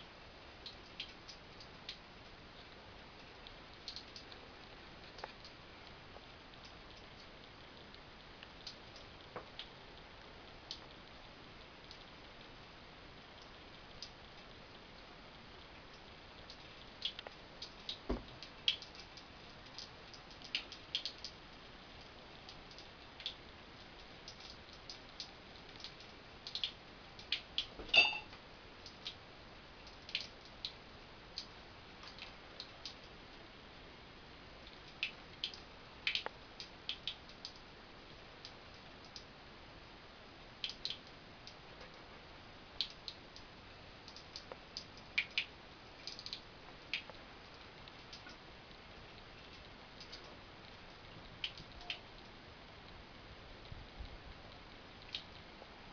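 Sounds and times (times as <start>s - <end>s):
water drips and splashes: 15.8s - 29.2s, 29.8s - 30.8s, 42.6s - 52.4s.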